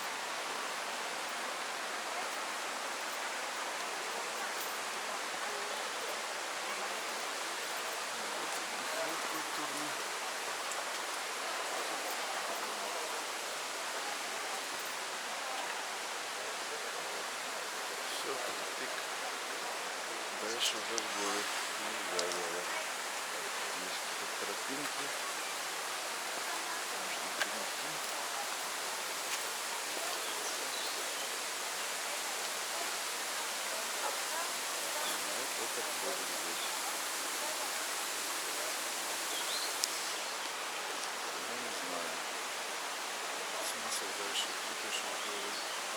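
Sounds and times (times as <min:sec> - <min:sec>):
waterfall rushing: 0:00.0 - 0:45.9.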